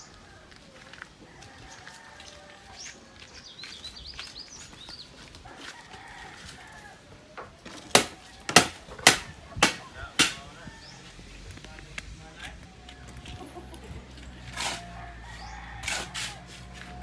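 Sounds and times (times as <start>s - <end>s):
chickens: 0.0s - 3.8s
birds chirping: 7.3s - 15.8s
loud sharp knock: 7.9s - 10.5s.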